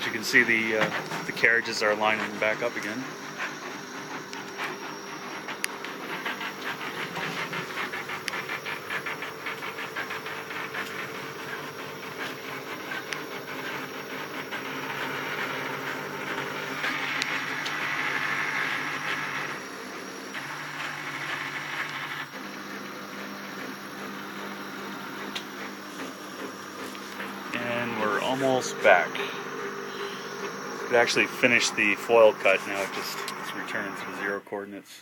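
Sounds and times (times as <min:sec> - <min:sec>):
stepper motors whining: 0:00.0 - 0:34.4
hissing rush: 0:26.1 - 0:34.2.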